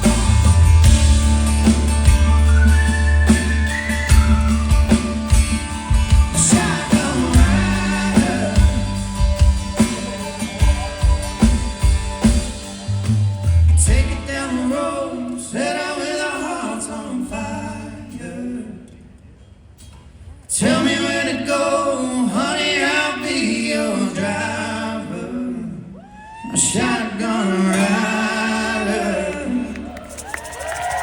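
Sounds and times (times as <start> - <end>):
person singing: 0.0 - 12.9
live rock band: 0.0 - 15.9.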